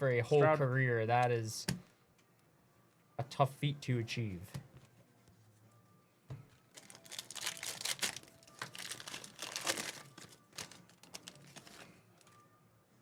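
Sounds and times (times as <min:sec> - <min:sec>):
foil wrappers tearing and crinkling: 0:06.7 - 0:12.3.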